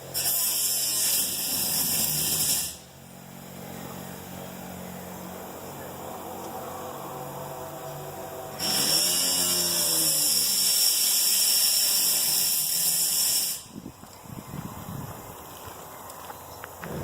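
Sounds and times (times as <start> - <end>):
angle grinder cutting sheet metal: 0.1 - 2.9, 8.6 - 13.7.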